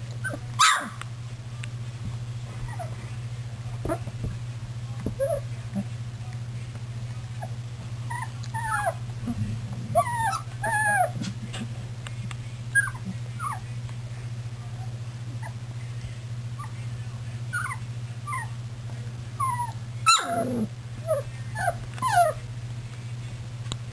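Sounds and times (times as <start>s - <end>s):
steady low hum: 0.0s - 23.9s
puppies whimpering and squeaking: 2.6s - 3.0s, 5.2s - 5.5s, 8.1s - 9.0s, 9.9s - 11.2s, 12.8s - 13.7s, 17.5s - 18.5s, 19.4s - 22.4s.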